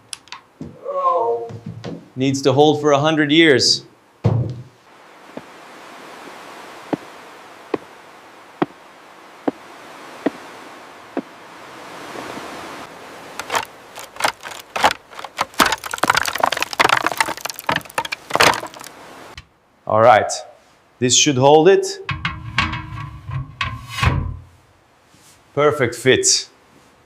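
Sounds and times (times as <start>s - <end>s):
clatter of knocks and rattles: 13.4s - 18.9s, 22.1s - 24.4s.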